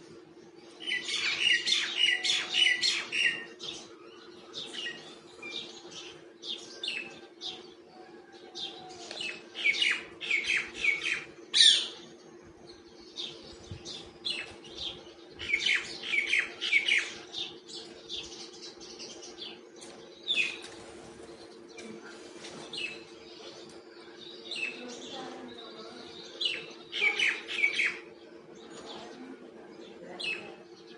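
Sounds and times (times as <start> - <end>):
myna chirping: 0.0 - 30.9
steady low hum: 0.0 - 30.9.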